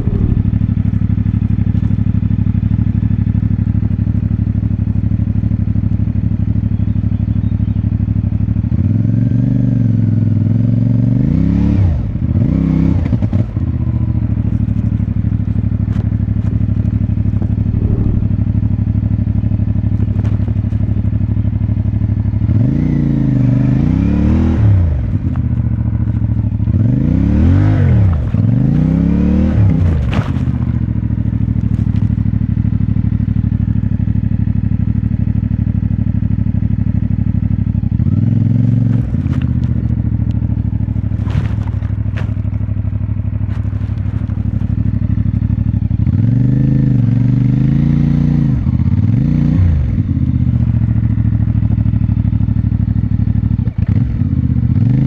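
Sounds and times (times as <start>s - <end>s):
engine throttle blips: 0.0s - 1.0s, 17.2s - 18.9s
motorcycle engine idling: 0.0s - 9.1s, 13.4s - 22.5s, 25.0s - 26.9s, 30.4s - 46.2s, 50.0s - 54.8s.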